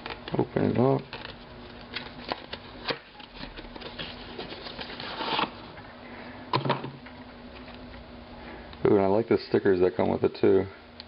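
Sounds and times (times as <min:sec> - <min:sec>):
packaging rustling: 0:00.0 - 0:05.7.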